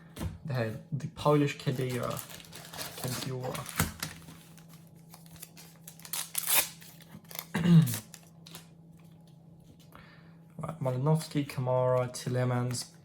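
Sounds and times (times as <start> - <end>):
foil packet tearing: 1.6 - 8.7
cards rustling: 1.6 - 9.1.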